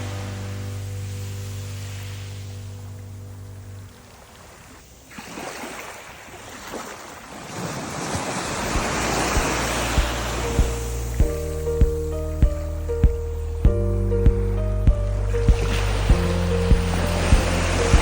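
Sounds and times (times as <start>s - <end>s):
rushing water: 0.0s - 18.0s
low rumble: 8.7s - 18.0s.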